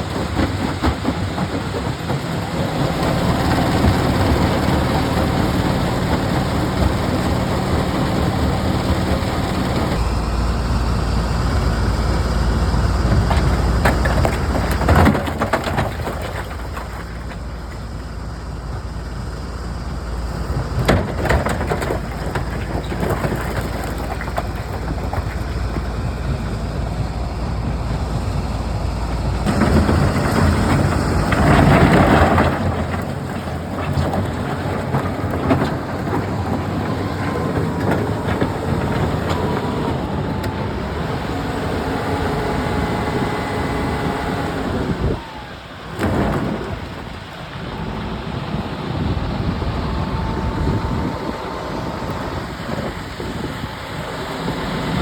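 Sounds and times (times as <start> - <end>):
stone crusher rumbling: 0.0 - 55.0
rocks knocking: 12.9 - 17.9, 20.4 - 41.8.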